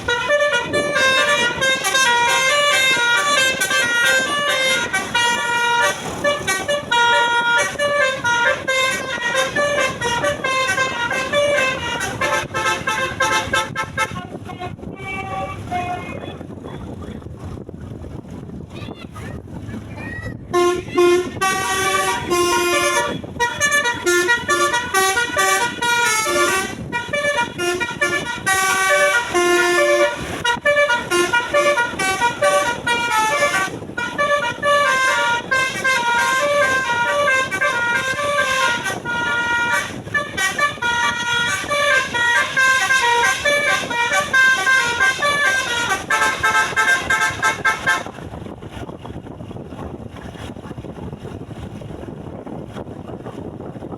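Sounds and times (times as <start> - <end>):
musical air horn playing a tune: 0.0 - 14.4, 20.5 - 48.2.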